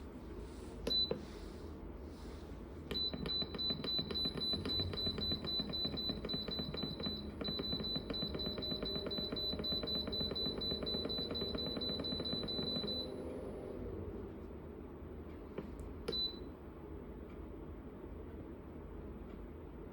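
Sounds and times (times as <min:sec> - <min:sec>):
steady low hum: 0:00.0 - 0:19.9
electronic beeping: 0:02.9 - 0:13.5.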